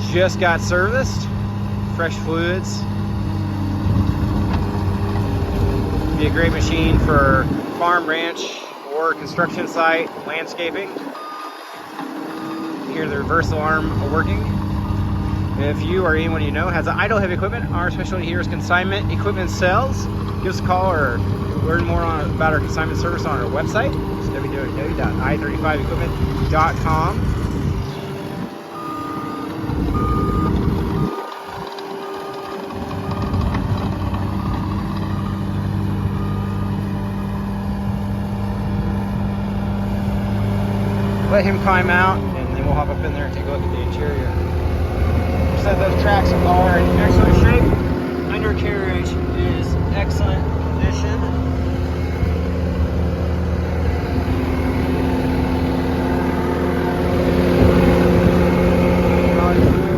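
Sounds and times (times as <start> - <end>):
diesel engine running: 0.0 - 59.9
backup alarm beeps: 11.2 - 11.7, 28.8 - 32.2.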